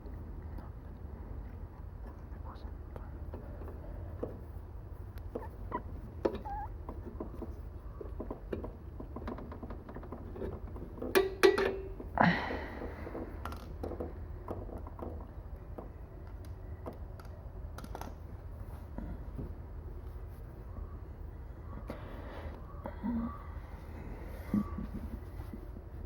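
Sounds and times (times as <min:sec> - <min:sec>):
clicks and taps on metal parts: 0:06.2 - 0:12.1.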